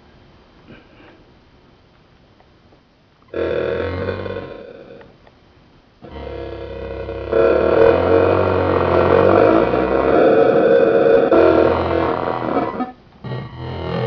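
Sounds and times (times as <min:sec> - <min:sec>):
synthetic monster drone: 0:06.0 - 0:14.0.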